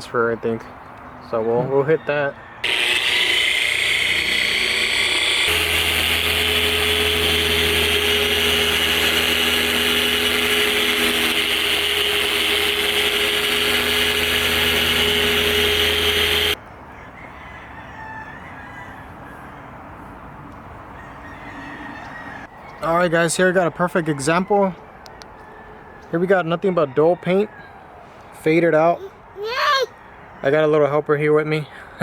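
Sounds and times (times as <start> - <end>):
electric car polisher running: 2.6 - 16.6
low hum: 2.6 - 16.6.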